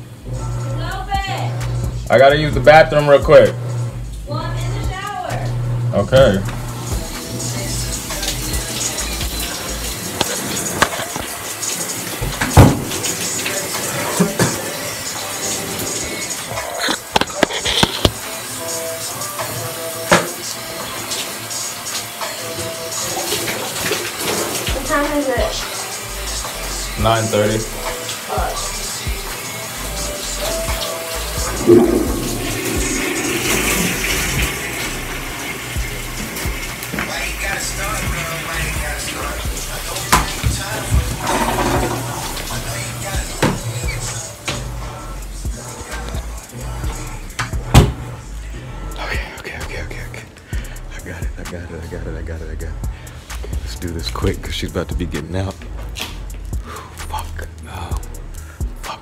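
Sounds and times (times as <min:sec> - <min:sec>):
shower water running: 0:00.0 - 0:59.0
toilet flushing: 0:05.4 - 0:17.2, 0:17.8 - 0:48.2.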